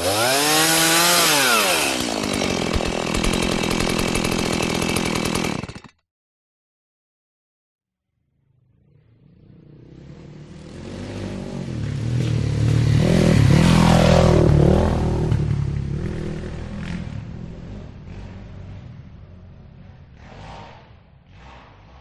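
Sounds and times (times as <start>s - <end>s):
motorcycle engine passing by: 8.4s - 22.0s.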